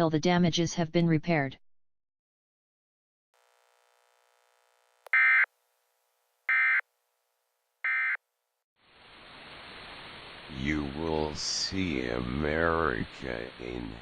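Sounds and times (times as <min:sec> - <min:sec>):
digital data tone bursts: 0:06.5 - 0:06.8, 0:07.9 - 0:08.2
static hiss: 0:08.8 - 0:14.0.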